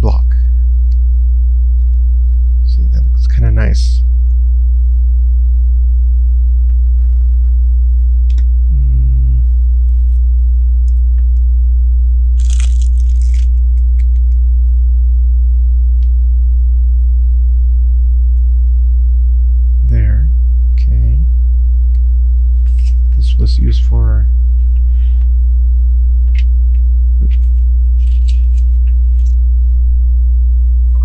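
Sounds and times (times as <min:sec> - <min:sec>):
loud electrical hum: 0:00.0 - 0:31.0
plastic bag rustle: 0:12.4 - 0:13.6, 0:27.3 - 0:29.4.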